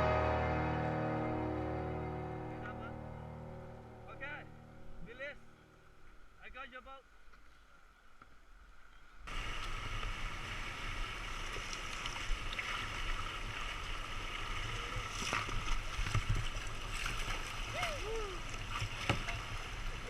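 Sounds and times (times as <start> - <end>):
rushing river water: 9.3 - 20.0.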